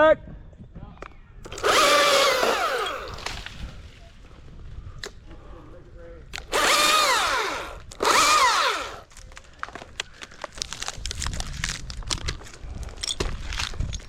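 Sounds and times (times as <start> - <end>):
chainsaw revving: 1.5 - 3.4, 6.4 - 9.1
irregular clicks and crackles: 6.3 - 14.0.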